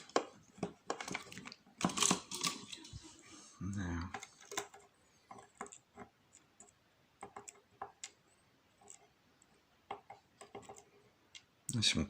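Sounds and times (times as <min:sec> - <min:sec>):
small metallic clicks and taps: 0:04.1 - 0:08.2, 0:08.8 - 0:11.8.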